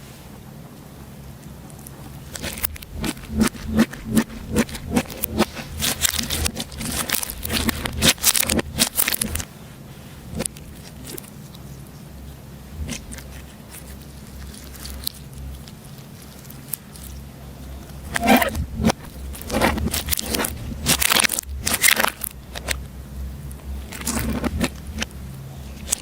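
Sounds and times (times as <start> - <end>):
slime crackling and popping: 2.2 - 9.5, 17.9 - 22.8.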